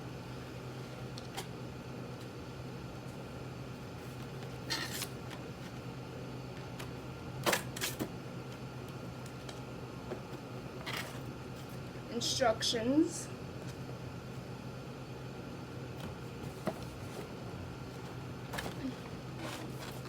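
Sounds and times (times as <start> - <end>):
steady low hum: 0.0 - 20.0
packaging rustles and scrapes: 4.1 - 5.2, 18.0 - 20.0.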